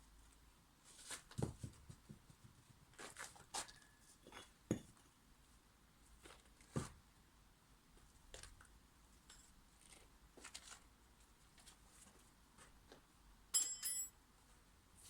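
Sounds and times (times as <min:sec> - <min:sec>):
bright metallic clinks: 0:13.6 - 0:14.1.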